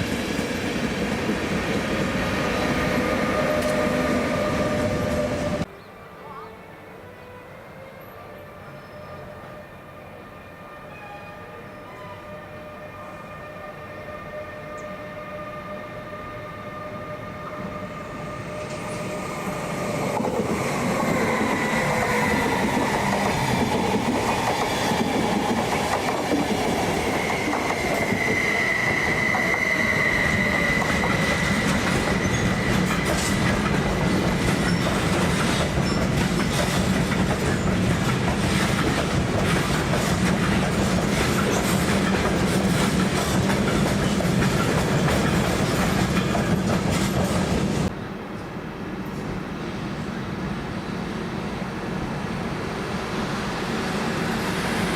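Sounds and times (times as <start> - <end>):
train rolling past: 0.0 - 6.1, 6.7 - 54.9
high wheel squeal: 26.8 - 36.2.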